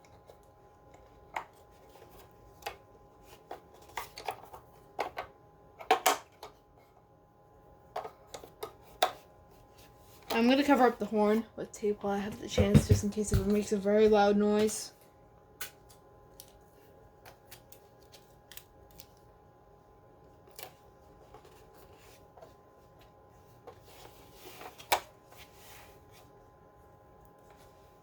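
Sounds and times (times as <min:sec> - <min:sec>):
adhesive tape clicks and rustles: 0:17.2 - 0:19.3.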